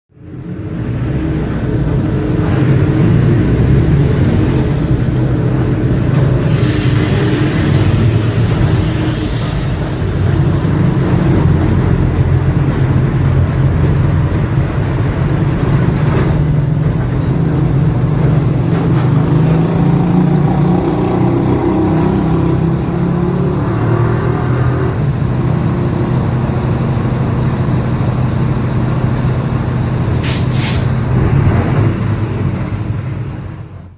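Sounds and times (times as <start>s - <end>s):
diesel bus engine running: 0.1s - 33.9s
air hisses: 6.4s - 10.5s, 30.2s - 31.0s.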